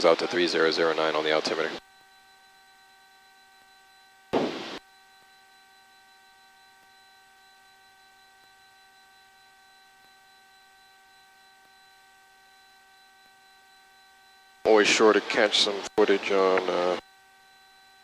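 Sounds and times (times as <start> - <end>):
steady electrical hum: 0.0 - 18.0.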